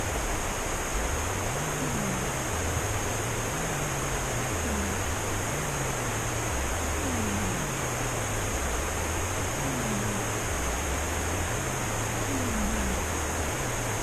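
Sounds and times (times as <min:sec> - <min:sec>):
steady hiss: 0:00.0 - 0:14.0
cat snoring softly: 0:01.5 - 0:08.8, 0:09.4 - 0:13.3.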